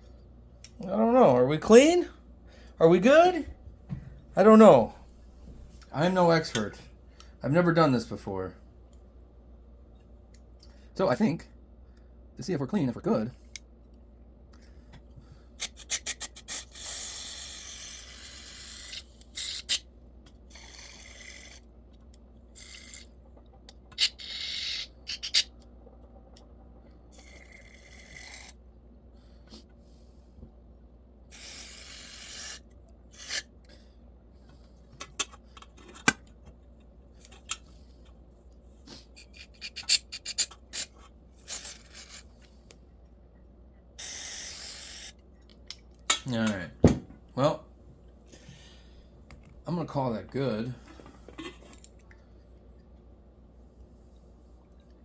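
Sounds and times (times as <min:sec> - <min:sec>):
aerosol spray hissing: 0:44.0 - 0:45.2.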